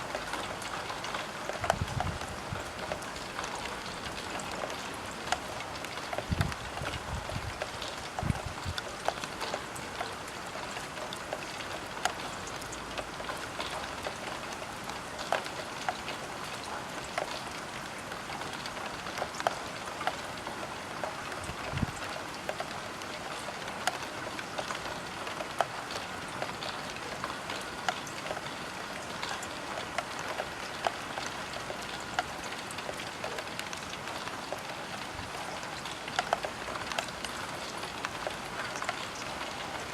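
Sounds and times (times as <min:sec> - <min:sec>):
rain on a roof window: 0:00.0 - 0:39.9.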